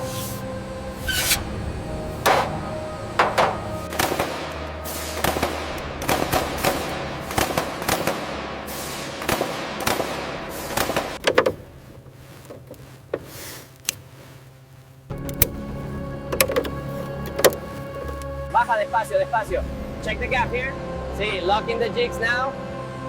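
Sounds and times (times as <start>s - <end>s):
sharp ringing knocks and bangs: 2.3s - 4.0s.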